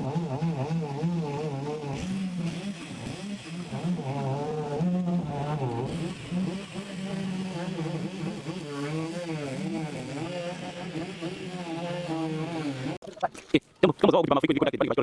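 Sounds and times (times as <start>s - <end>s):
engine humming: 0.0s - 13.0s
people talking: 13.8s - 15.0s.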